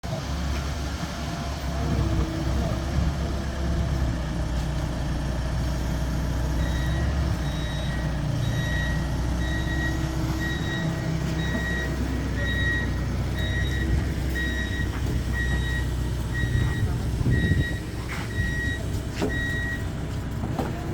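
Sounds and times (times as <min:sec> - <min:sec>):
engine rumbling: 0:00.0 - 0:20.9
reversing alarm beeping: 0:06.5 - 0:19.9.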